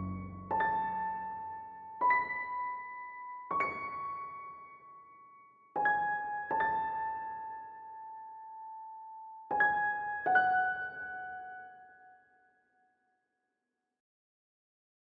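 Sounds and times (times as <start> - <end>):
slow electric piano melody: 0.0 - 4.8.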